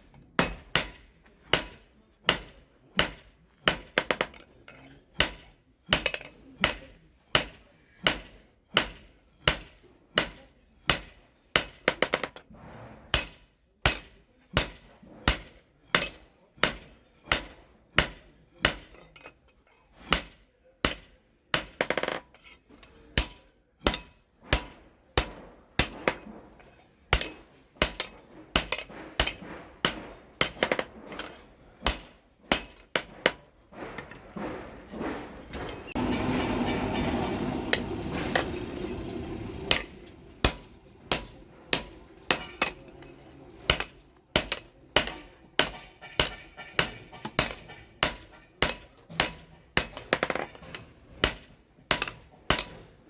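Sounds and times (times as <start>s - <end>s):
hammer striking blade on anvil: 39.6s - 50.1s, 50.7s - 52.8s.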